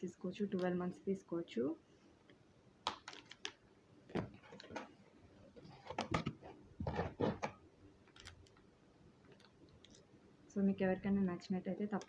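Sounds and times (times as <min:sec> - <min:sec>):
cosmetic packaging clicks and rustles: 0:02.8 - 0:10.1.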